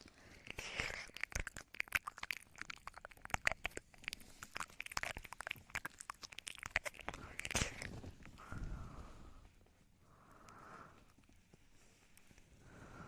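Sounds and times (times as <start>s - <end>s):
soft breathy puffs: 0.0s - 1.3s, 3.8s - 5.3s, 6.8s - 13.0s
wet lip and tongue clicks: 0.0s - 8.5s.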